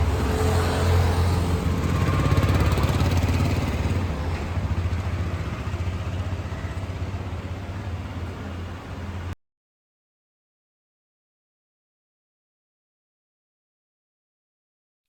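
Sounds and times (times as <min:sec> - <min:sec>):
vehicle engine low rumble: 0:00.0 - 0:09.4.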